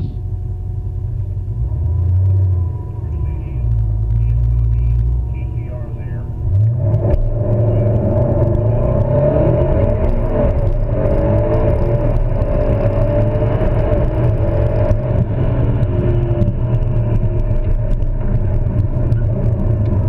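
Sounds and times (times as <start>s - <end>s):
car engine rumbling: 0.0s - 20.0s.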